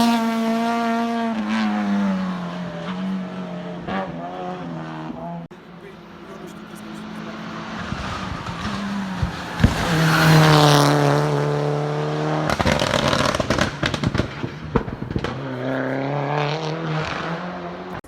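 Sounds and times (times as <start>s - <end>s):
race car engine at full throttle: 0.0s - 18.0s
exhaust bangs and crackles: 6.4s - 18.0s.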